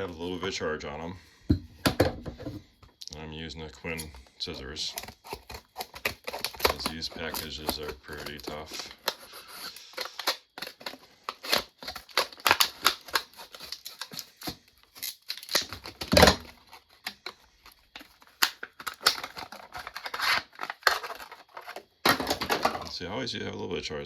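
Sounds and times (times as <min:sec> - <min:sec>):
scissors cutting hard plastic: 0:03.9 - 0:22.8.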